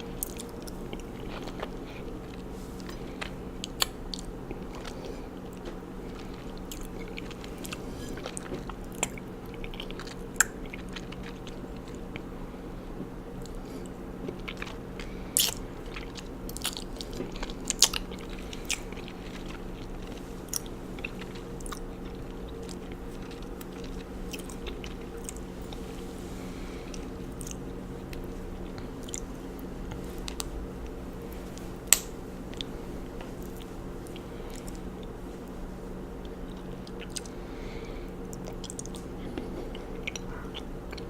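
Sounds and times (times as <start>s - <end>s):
steady low hum: 0.0s - 41.0s
wet sticky chewing clicks: 14.2s - 25.8s, 36.2s - 37.4s, 38.2s - 41.0s.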